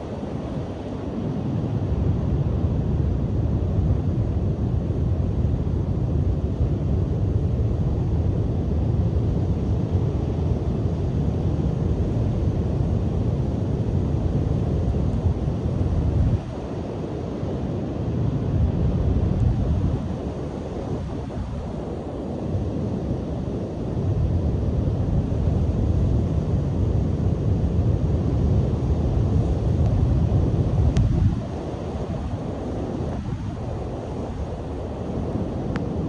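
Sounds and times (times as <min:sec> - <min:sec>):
wind buffeting microphone: 0:18.2 - 0:36.0.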